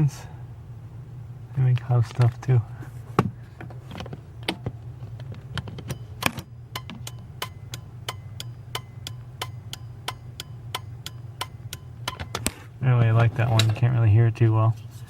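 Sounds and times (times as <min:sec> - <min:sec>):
steady low hum: 0:00.0 - 0:15.0
turn signal flasher clicking: 0:03.6 - 0:13.8.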